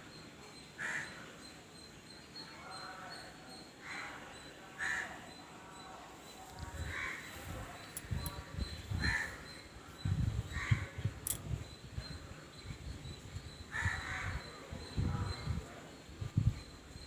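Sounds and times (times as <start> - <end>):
crow cawing: 0.8 - 1.2, 4.8 - 5.2, 6.8 - 7.3, 9.0 - 9.4.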